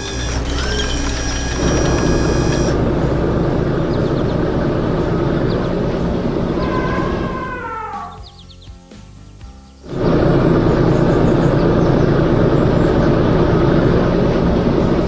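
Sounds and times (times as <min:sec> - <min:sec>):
heavy machine engine rumbling: 0:00.0 - 0:07.6, 0:09.8 - 0:15.0
held musical tones: 0:00.0 - 0:08.9.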